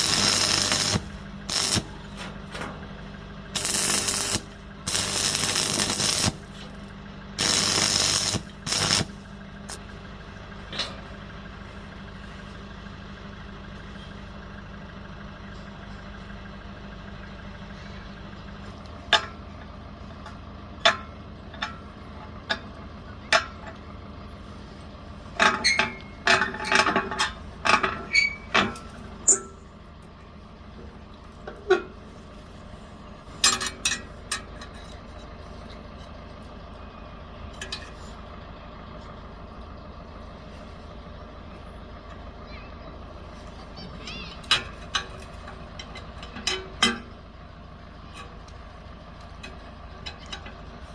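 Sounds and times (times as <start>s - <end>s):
steady low hum: 0.0s - 50.9s
metallic clanks and taps: 19.1s - 23.8s, 25.4s - 29.6s, 33.4s - 35.8s, 37.6s - 38.1s, 44.4s - 47.2s, 49.2s - 50.6s.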